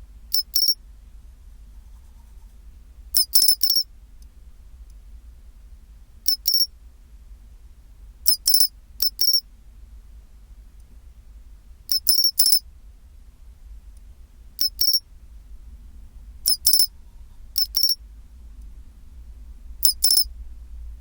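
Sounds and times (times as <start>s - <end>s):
cricket chirping: 0.3s - 0.8s, 3.2s - 3.9s, 6.3s - 6.7s, 8.3s - 9.4s, 11.9s - 12.6s, 14.6s - 15.0s, 16.4s - 16.9s, 17.6s - 18.0s, 19.8s - 20.3s.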